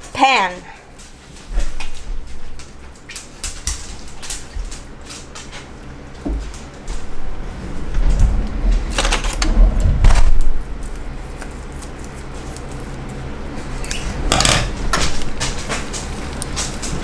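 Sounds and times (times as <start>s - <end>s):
heavy bumps: 6.1s - 11.7s
frying pan and utensils clattering: 14.2s - 17.0s.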